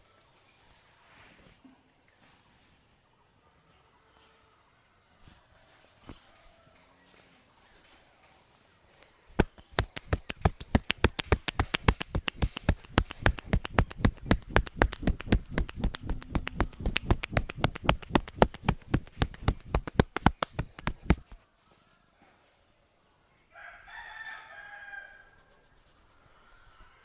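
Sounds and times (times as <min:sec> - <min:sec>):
hands striking in massage: 0:09.4 - 0:21.4.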